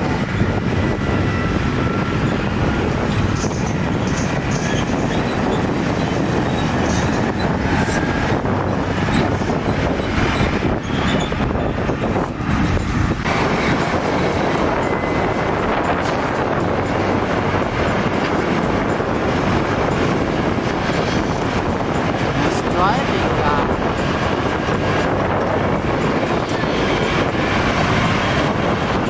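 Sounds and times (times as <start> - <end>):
diesel machinery rumble: 0.0 - 29.0
faint high squeals: 9.1 - 11.8.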